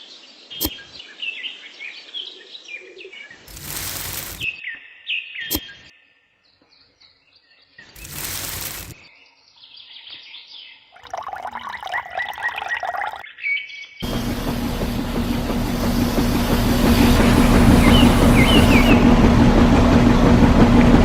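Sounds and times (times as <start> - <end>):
loud hiss of noise: 3.5 - 4.5, 8.0 - 9.0, 14.0 - 20.2
birds chirping: 14.1 - 19.2.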